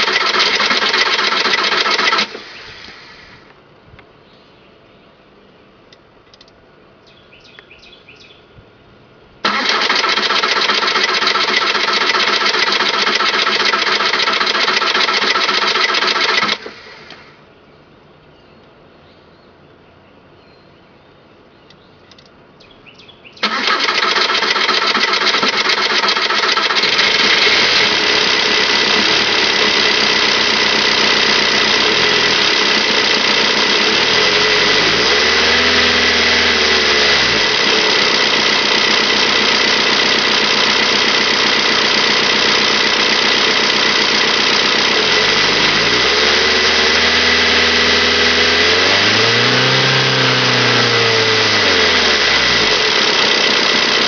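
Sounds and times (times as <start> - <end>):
faint starter clicks: 0.0 - 3.6, 9.4 - 17.3, 23.4 - 35.3
diesel engine clattering: 23.4 - 54.0.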